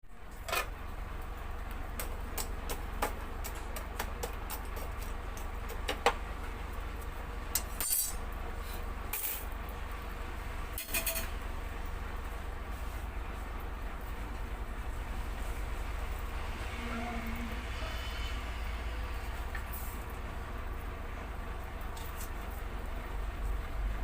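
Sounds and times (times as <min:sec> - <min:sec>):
steady low hum: 0:00.0 - 0:24.0
cooking utensils clinking: 0:10.8 - 0:11.3.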